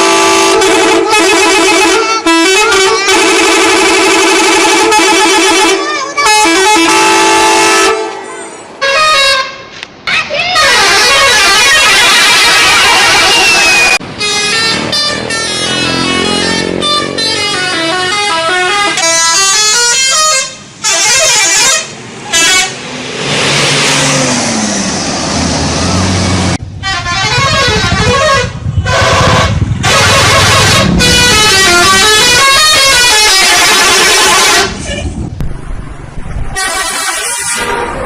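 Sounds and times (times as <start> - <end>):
bus musical air horns: 0.0 - 24.6, 25.6 - 35.2, 36.6 - 38.0.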